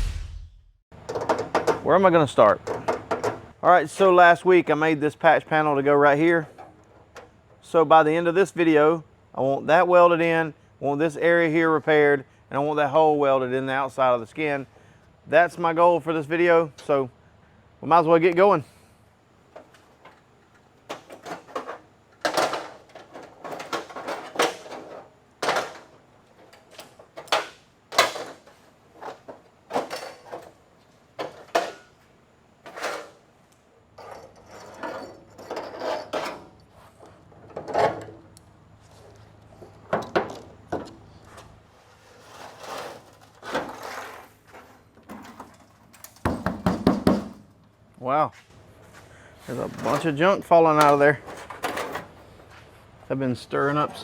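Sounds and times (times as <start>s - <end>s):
scraping and rattling: 19.6s - 30.6s.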